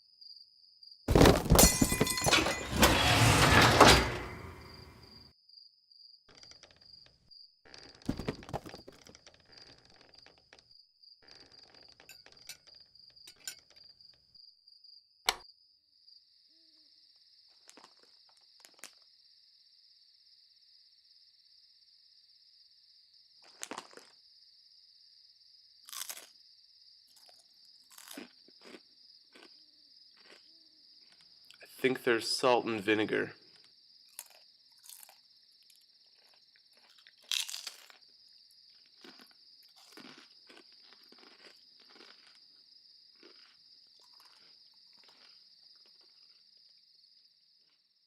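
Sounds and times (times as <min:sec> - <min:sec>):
rustling and crunching: 0:01.1 - 0:04.9, 0:36.2 - 0:38.0, 0:38.8 - 0:42.4
crickets chirping: 0:04.6 - 0:48.0.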